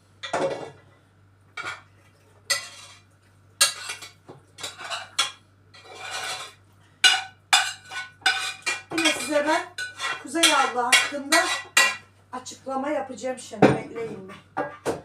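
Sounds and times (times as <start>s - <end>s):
dishes and cutlery clattering: 2.5s - 12.0s.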